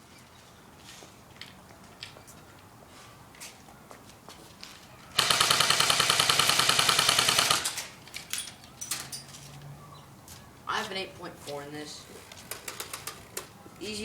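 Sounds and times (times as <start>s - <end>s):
airsoft gun full-auto burst: 5.2s - 7.8s.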